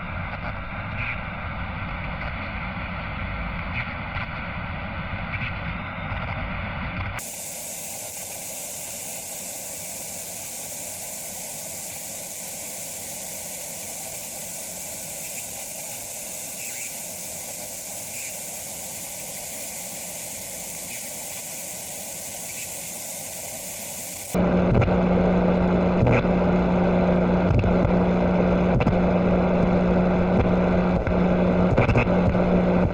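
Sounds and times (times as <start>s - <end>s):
radio static hiss: 0.0s - 32.9s
faint crackles: 7.2s - 32.9s.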